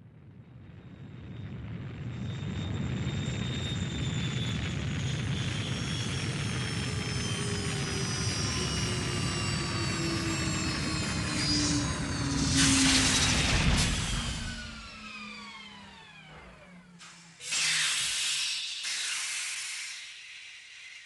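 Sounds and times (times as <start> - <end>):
thin falling whining tones: 3.2 - 18.0.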